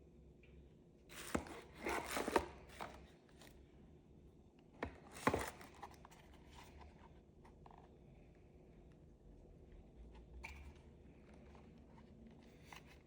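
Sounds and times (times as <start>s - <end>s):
handling clicks and rustles: 4.8s - 6.8s.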